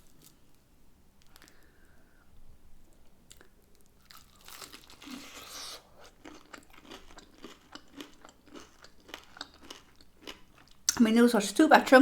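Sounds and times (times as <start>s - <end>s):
crunchy bite and tear: 4.0s - 10.4s.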